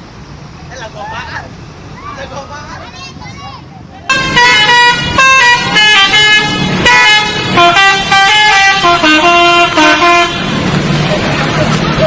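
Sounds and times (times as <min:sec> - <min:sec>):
musical bus air horns: 0:04.1 - 0:10.8.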